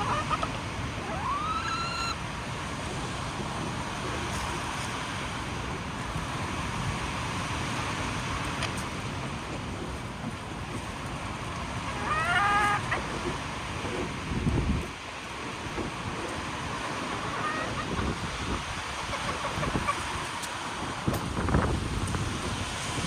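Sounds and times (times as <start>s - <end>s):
chicken call: 0.0s - 2.2s, 11.8s - 13.4s, 16.6s - 18.3s
wind rushing over microphone: 12.8s - 23.0s.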